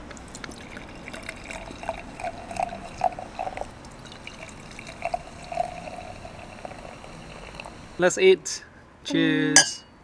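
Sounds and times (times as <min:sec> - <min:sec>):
wine glugging into a glass: 0:00.0 - 0:08.0.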